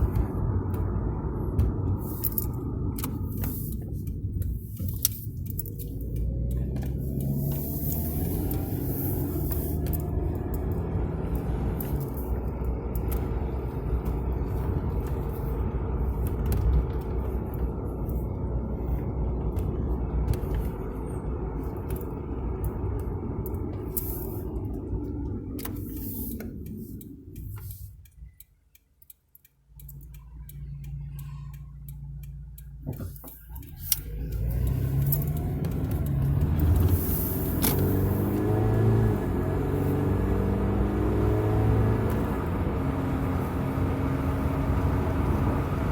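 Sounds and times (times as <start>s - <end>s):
car engine running: 0.0s - 45.9s
road noise: 0.0s - 45.9s.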